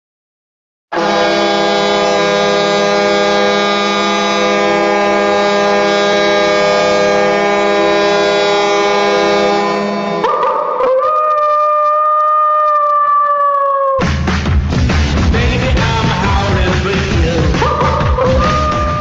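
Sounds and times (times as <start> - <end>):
goal horn blast: 0.9 - 10.8, 17.6 - 19.0.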